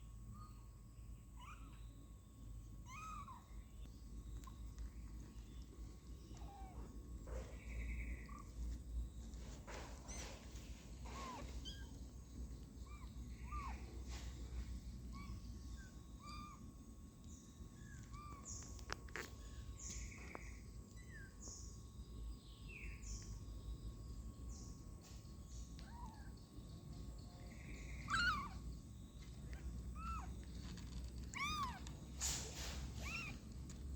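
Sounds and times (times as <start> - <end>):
kittens mewing: 11.0 - 14.1, 27.9 - 28.7, 29.4 - 32.2, 32.8 - 33.8.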